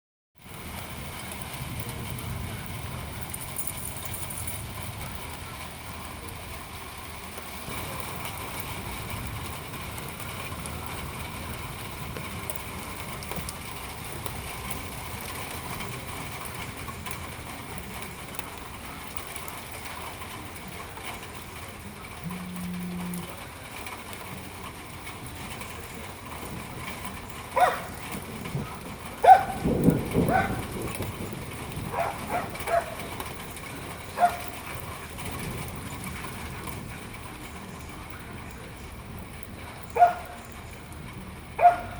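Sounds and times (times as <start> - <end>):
dog barking: 27.6 - 28.0, 29.2 - 29.6, 30.2 - 30.7, 31.9 - 33.0, 34.2 - 34.6, 40.0 - 40.4, 41.6 - 41.9.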